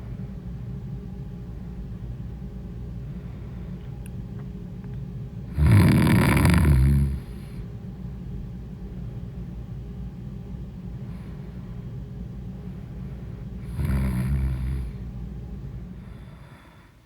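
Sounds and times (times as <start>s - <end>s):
woman snoring: 5.5s - 7.5s, 13.6s - 15.0s, 16.0s - 17.0s.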